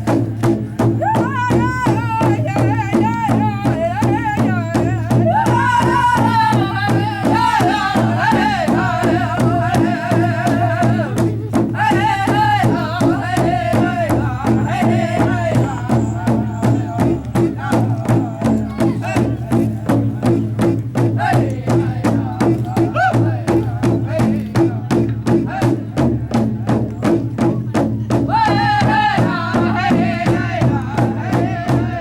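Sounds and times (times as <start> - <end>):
fast drum beat: 0.0 - 32.0
person singing: 1.0 - 19.6.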